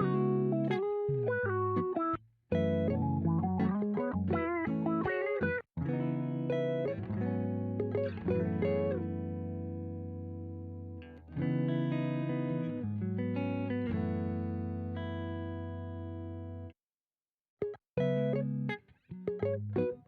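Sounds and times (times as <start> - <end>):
electric guitar chords ringing: 0.0 - 1.9, 2.6 - 10.6.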